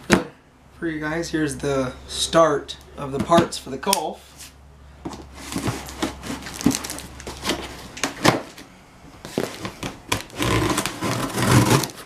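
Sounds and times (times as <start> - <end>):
cardboard scraping and tearing: 5.3 - 8.6, 9.3 - 12.0.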